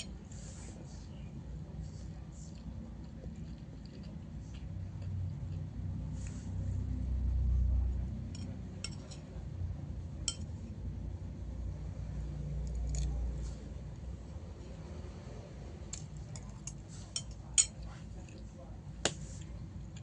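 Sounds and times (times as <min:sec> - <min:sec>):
low muffled rumble: 0:00.0 - 0:20.0
spoon clinking against plate: 0:08.3 - 0:09.3, 0:10.2 - 0:10.5.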